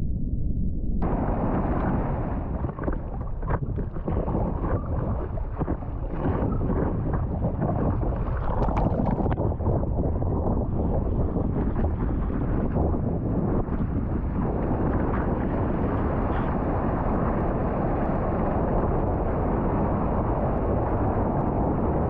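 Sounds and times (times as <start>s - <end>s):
wind rumbling on microphone: 0.0s - 22.0s
water sloshing and splashing: 1.5s - 13.0s.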